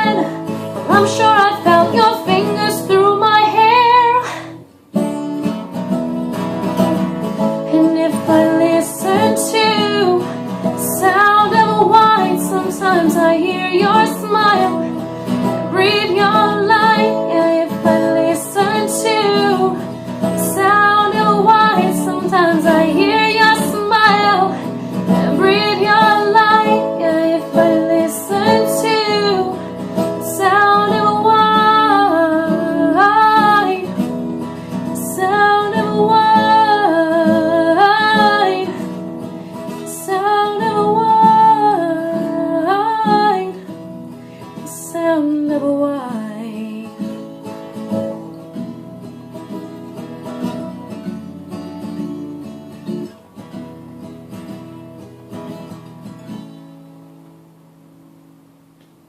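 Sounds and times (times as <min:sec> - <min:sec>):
acoustic guitar: 0:00.0 - 0:59.0.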